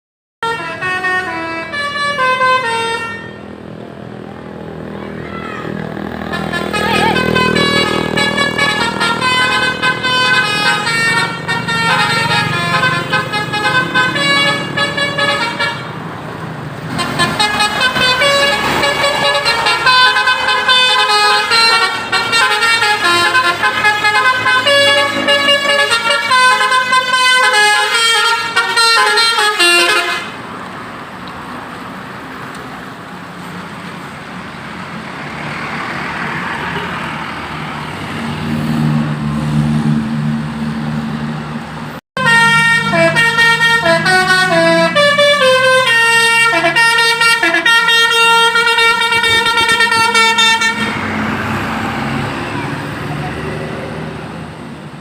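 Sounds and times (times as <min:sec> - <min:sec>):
multi-tone horn melody: 0:00.4 - 0:03.6, 0:05.9 - 0:16.0, 0:16.9 - 0:30.4, 0:42.2 - 0:51.3.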